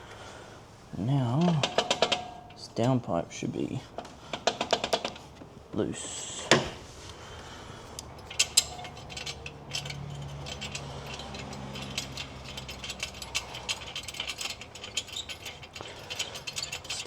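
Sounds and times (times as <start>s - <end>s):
ratchet wrench clicking: 8.0s - 17.0s.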